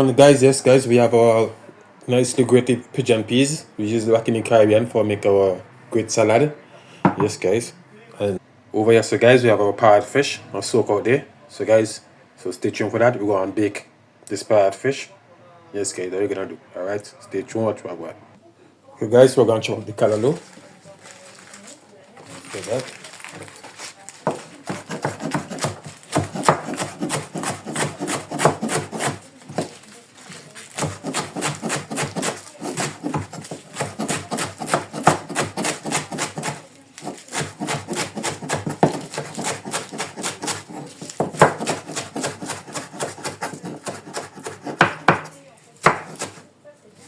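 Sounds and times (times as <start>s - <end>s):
knife chopping on cutting board: 24.3s - 29.7s, 30.8s - 46.4s.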